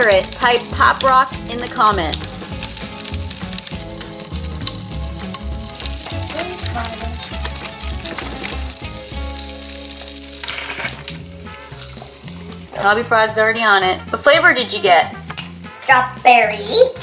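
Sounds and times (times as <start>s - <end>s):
candy popping in water: 0.0s - 13.0s
background music: 0.0s - 17.0s.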